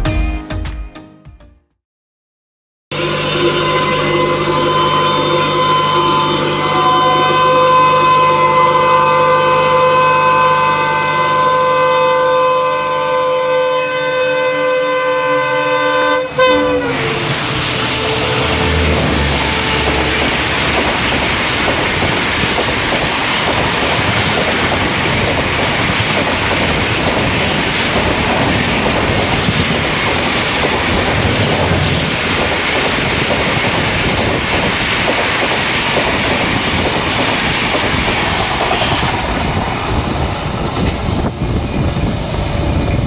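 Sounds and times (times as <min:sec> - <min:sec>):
train wheels clattering over rails: 0:16.7 - 0:43.0.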